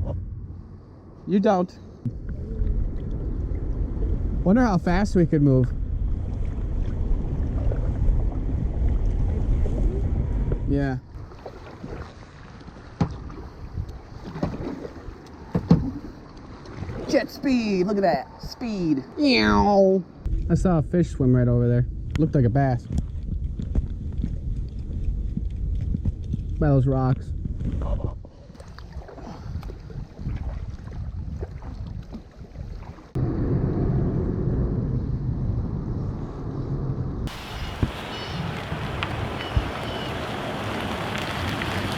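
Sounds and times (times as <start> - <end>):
wind buffeting microphone: 2.0 - 12.0, 13.1 - 16.1, 19.3 - 41.9
paddles splashing through water: 11.2 - 17.9, 28.6 - 33.2, 37.3 - 41.9.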